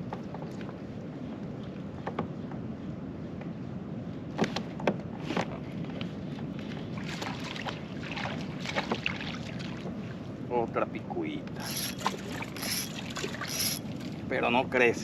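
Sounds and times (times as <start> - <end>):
water lapping around kayak: 5.2 - 10.5, 11.5 - 14.3.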